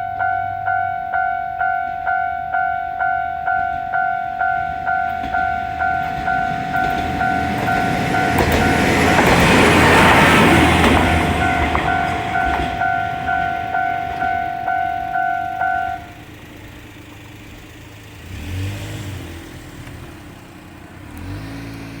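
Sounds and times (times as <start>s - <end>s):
level crossing warning bell: 0.0s - 16.6s
passing train: 0.0s - 22.0s
vehicle engine passing: 5.2s - 22.0s.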